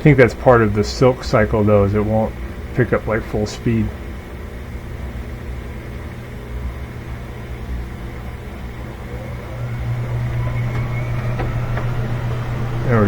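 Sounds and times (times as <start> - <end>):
faint rising whine: 0.0 - 13.0
washing machine spinning: 0.0 - 13.0.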